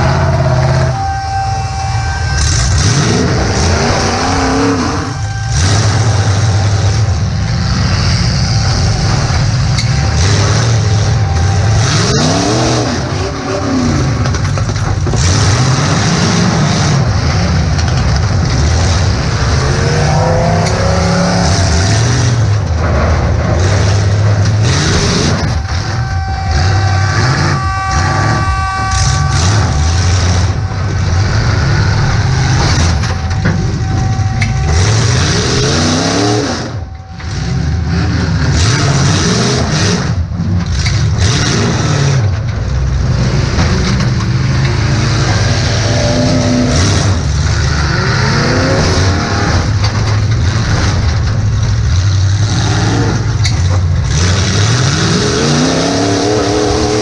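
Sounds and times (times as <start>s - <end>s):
car engine revving: 0.0s - 57.0s.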